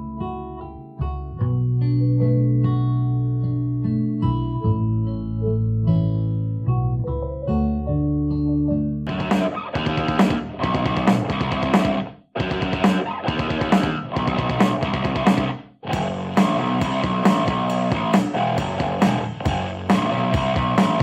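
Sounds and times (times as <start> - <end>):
rock music through a speaker: 9.1 - 21.0.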